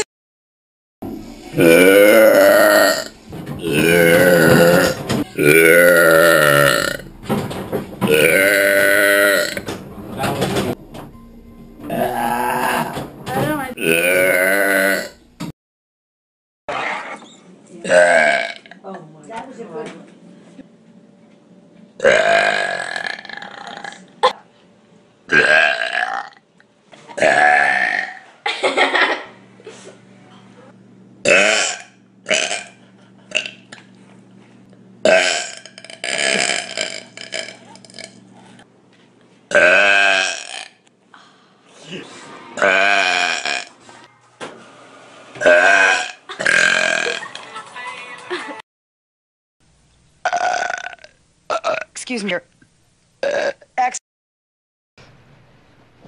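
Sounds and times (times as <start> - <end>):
person belching: 1.5 - 7.0, 8.0 - 9.6, 11.9 - 13.0, 13.8 - 15.2, 17.9 - 18.8, 22.0 - 24.0, 25.3 - 26.4, 27.2 - 28.2, 31.2 - 33.6, 35.0 - 38.2, 39.5 - 40.8, 42.6 - 43.7, 45.4 - 47.3, 50.2 - 51.9, 53.2 - 53.7.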